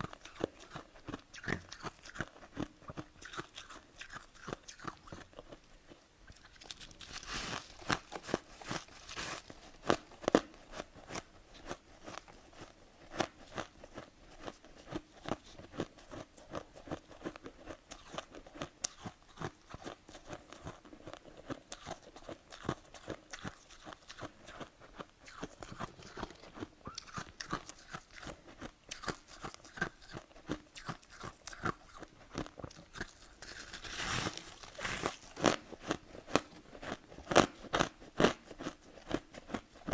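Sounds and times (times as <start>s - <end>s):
person crunching ice: 33.4s - 36.5s.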